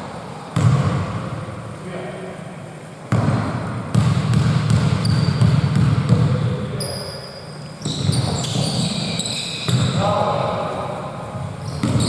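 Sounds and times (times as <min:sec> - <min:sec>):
basketball dribbling: 0:03.1 - 0:06.5, 0:11.7 - 0:12.0
sneakers squeaking on floor: 0:03.1 - 0:10.3, 0:11.4 - 0:12.0.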